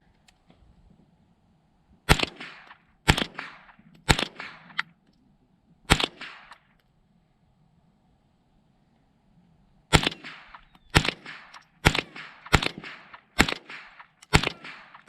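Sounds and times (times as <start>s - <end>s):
rifle shots with echo: 2.1s - 4.9s, 5.9s - 6.8s, 9.9s - 15.0s.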